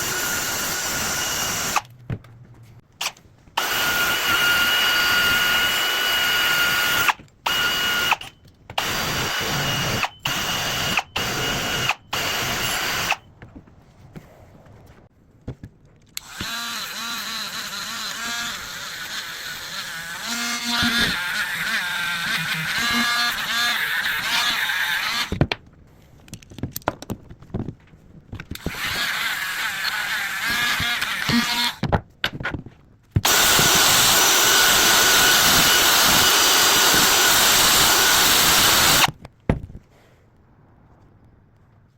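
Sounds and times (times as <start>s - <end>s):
wire brush power tool on metal: 0.0s - 1.9s, 3.0s - 13.3s, 16.2s - 25.4s, 28.6s - 31.8s, 33.2s - 39.1s.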